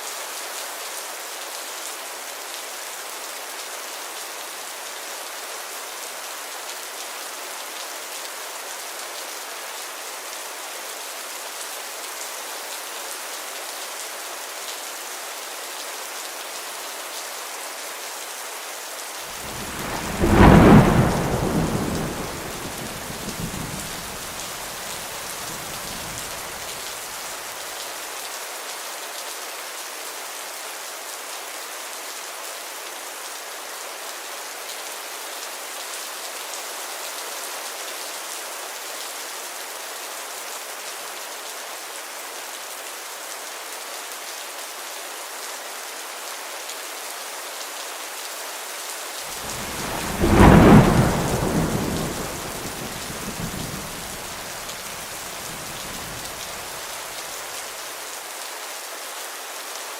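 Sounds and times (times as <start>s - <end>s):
heavy rain: 0.0s - 59.9s
thunder clap rumbling: 19.4s - 26.7s, 49.3s - 56.8s.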